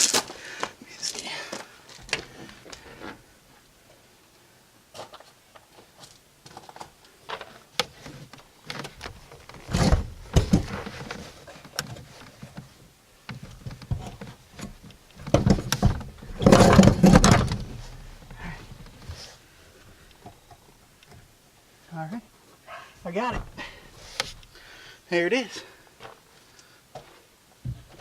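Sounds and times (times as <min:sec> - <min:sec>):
car seat frame knocking and scraping: 0:09.7 - 0:11.0, 0:13.4 - 0:18.1.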